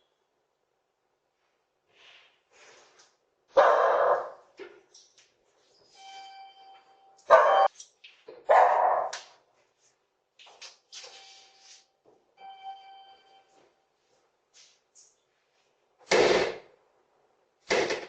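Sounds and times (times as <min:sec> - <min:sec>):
dog barking: 0:03.5 - 0:04.5, 0:07.3 - 0:07.7, 0:08.4 - 0:09.3
steady ringing tone: 0:06.0 - 0:07.2, 0:12.4 - 0:13.6.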